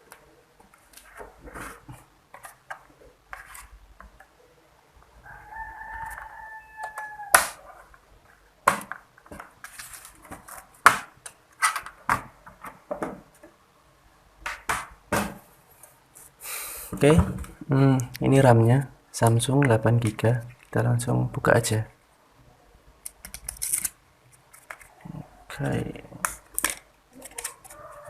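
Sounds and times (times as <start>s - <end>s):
rooster crowing: 5.2s - 7.8s, 27.4s - 28.0s.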